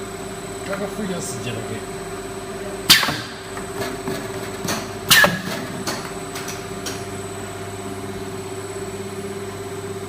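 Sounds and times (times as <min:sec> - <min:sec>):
loud sharp clank: 0:02.9 - 0:03.4.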